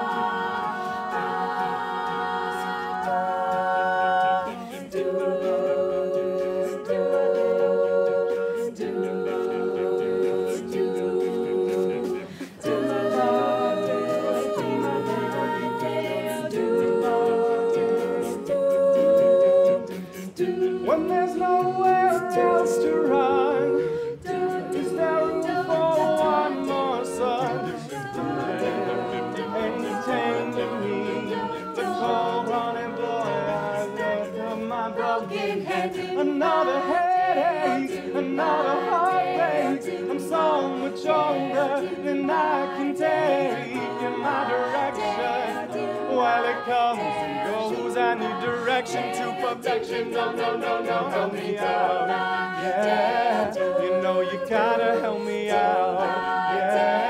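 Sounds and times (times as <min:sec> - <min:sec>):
wordless vocal harmony: 0:00.0 - 0:57.0.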